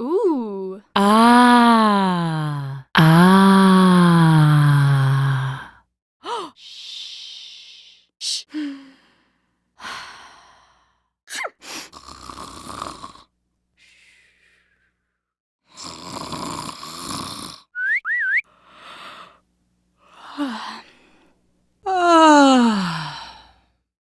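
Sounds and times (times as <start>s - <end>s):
person breathing and snoring: 1.0s - 5.8s, 22.3s - 23.8s
two-note whistle: 17.8s - 18.4s.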